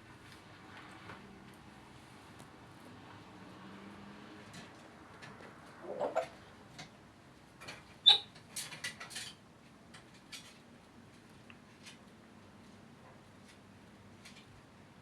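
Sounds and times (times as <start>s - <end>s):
parrot high squeak: 8.0s - 8.3s.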